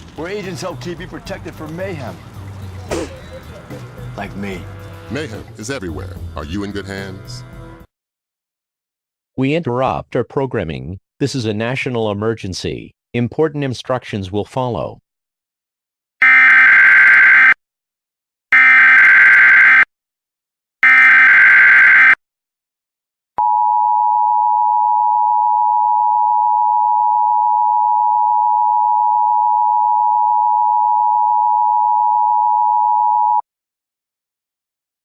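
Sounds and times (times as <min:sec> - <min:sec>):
screeching modem-like data bursts: 0:20.8 - 0:22.2.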